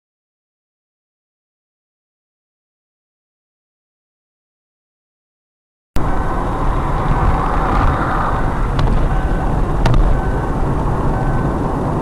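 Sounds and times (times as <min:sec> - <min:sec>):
car engine and tyre rumble: 0:06.0 - 0:12.0.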